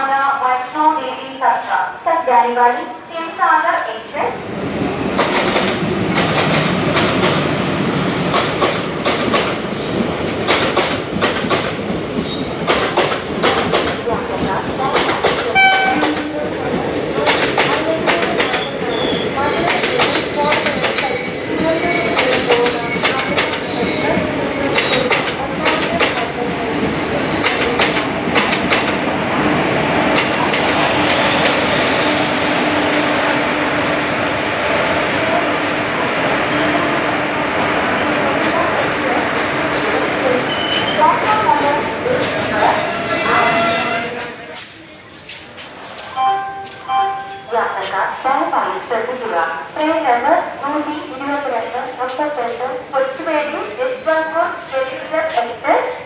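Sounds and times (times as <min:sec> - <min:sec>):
train rumbling: 0:02.7 - 0:56.0
train wheels clattering over rail joints: 0:05.2 - 0:07.5, 0:08.2 - 0:14.2, 0:22.0 - 0:29.0.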